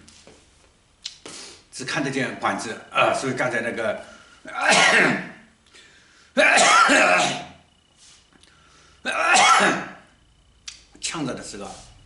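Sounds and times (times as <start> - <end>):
person coughing hard: 4.5 - 5.4, 6.4 - 7.6, 9.1 - 10.0.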